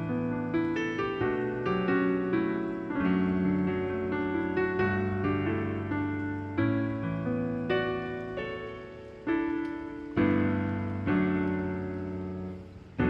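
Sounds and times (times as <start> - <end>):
slow piano chords: 0.0 - 13.0.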